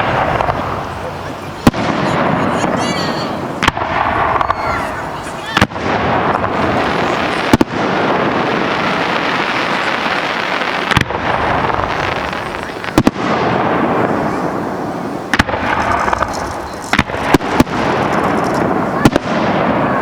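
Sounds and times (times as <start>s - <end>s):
dense rushing noise: 0.0s - 10.4s
fireworks bursting: 0.0s - 20.0s.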